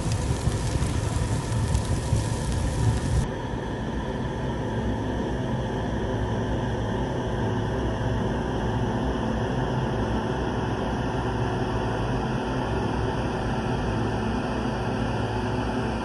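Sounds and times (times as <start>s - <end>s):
low rumbling drone: 0.0s - 3.3s.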